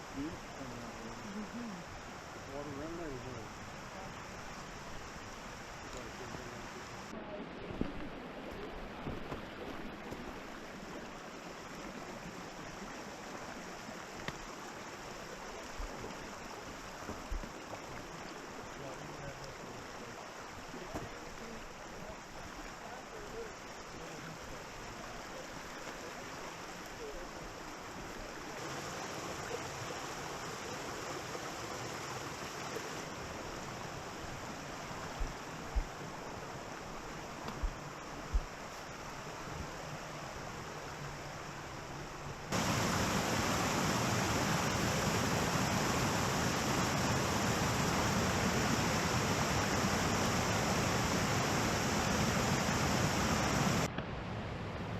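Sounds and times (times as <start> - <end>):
flowing creek water: 0.0 - 54.9.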